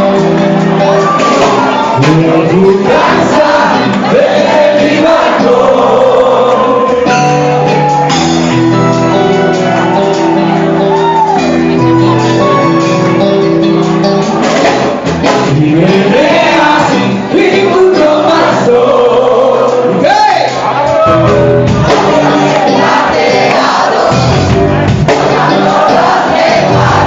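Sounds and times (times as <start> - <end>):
live rock band playing: 0.0 - 27.0
person singing: 1.0 - 8.1, 15.4 - 24.2.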